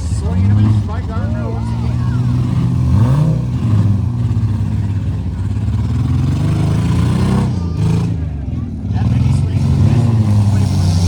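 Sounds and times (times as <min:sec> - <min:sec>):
car engines revving: 0:00.0 - 0:11.0.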